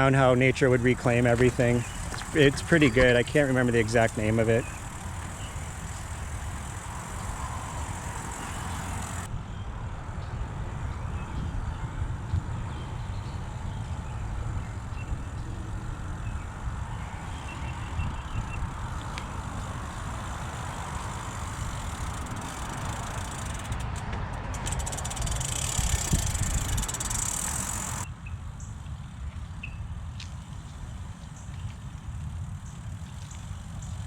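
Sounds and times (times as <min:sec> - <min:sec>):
bicycle rolling on trail: 0:00.0 - 0:34.0
wind rumbling on microphone: 0:00.0 - 0:34.0.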